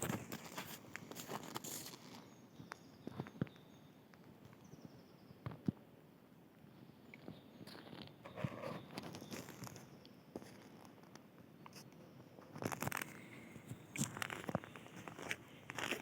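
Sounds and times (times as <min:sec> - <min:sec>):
footsteps scuffing: 0:00.0 - 0:02.2, 0:14.0 - 0:16.0.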